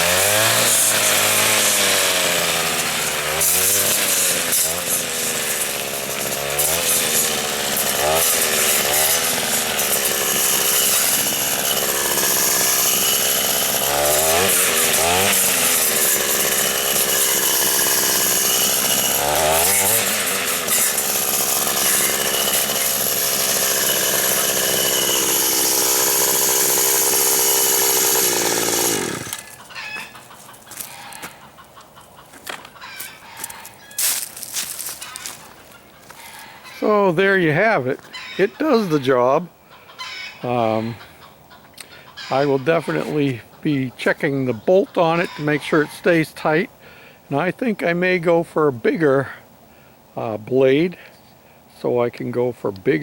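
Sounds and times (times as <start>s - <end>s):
string trimmer engine revving: 0.0s - 29.6s, 33.5s - 35.6s.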